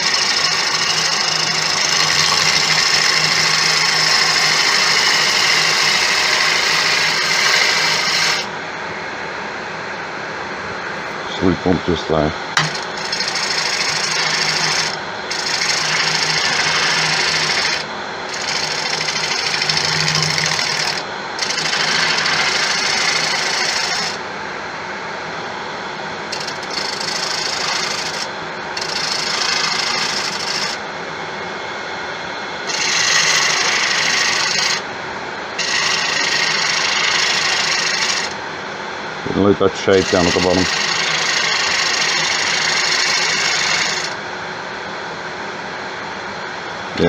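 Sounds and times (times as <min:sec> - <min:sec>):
lathe tool cutting wood: 0:00.0 - 0:08.5, 0:12.6 - 0:24.2, 0:26.3 - 0:30.8, 0:32.7 - 0:34.8, 0:35.6 - 0:38.4, 0:39.7 - 0:44.2.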